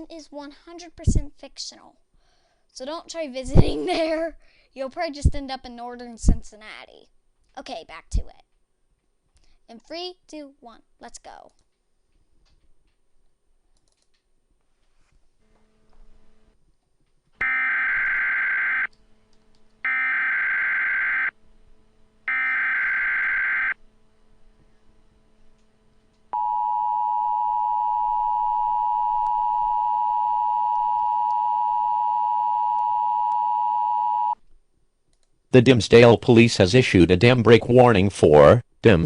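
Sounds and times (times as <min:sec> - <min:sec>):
harsh data bursts: 0:17.4 - 0:18.9, 0:19.8 - 0:21.3, 0:22.3 - 0:23.8.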